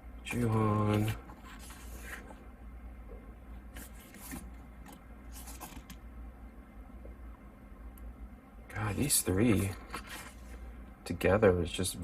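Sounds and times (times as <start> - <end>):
book pages turning: 0.3 - 2.4, 3.7 - 6.0, 9.4 - 10.6.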